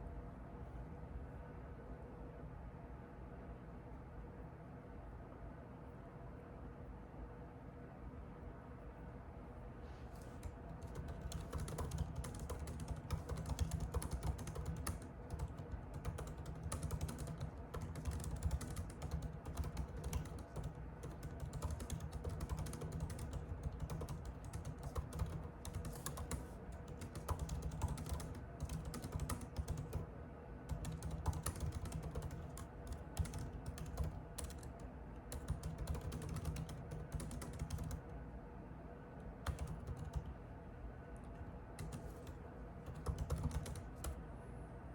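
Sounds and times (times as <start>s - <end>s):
typing on computer keyboard: 10.3s - 30.1s, 30.7s - 38.0s, 39.4s - 40.4s, 41.8s - 44.2s.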